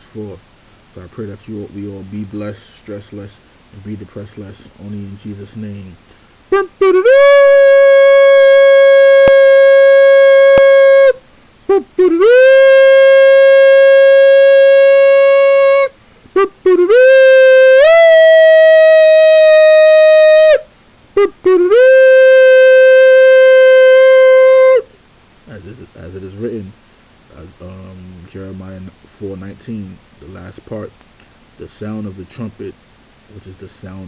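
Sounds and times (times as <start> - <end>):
shofar blasts: 6.5 - 24.9.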